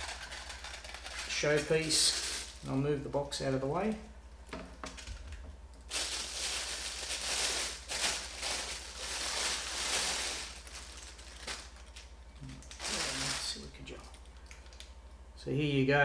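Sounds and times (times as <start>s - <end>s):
packaging rustling and crinkling: 0.0s - 2.8s, 5.0s - 14.8s
low electrical hum: 0.0s - 16.0s.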